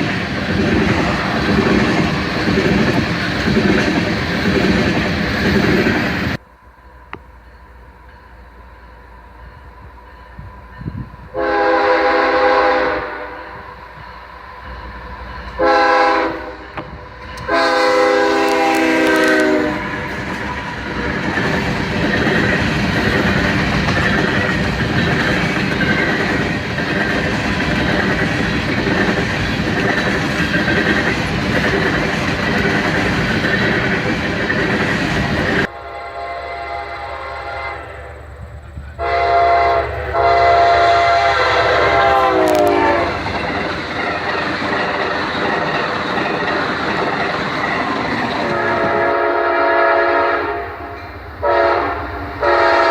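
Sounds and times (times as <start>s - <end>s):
train cars rattling: 0.0s - 36.1s, 36.7s - 52.9s
train wheels rushing on rail: 0.0s - 52.9s
distant train horn: 6.4s - 20.7s, 35.6s - 43.4s, 48.4s - 52.9s
locomotive horn blasts: 11.3s - 13.6s, 15.5s - 19.9s, 35.7s - 38.3s, 39.0s - 43.2s, 48.5s - 52.9s.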